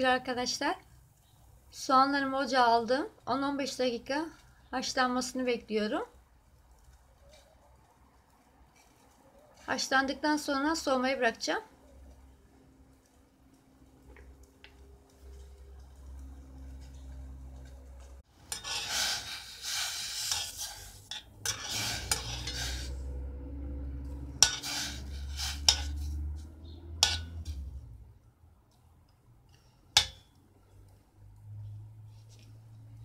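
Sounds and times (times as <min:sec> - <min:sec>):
metal spoon stirring and scraping: 0:18.3 - 0:27.9, 0:29.6 - 0:30.3
metal clinking on pot: 0:18.5 - 0:18.9, 0:20.3 - 0:23.0, 0:24.3 - 0:26.1, 0:27.0 - 0:27.7, 0:30.0 - 0:30.3.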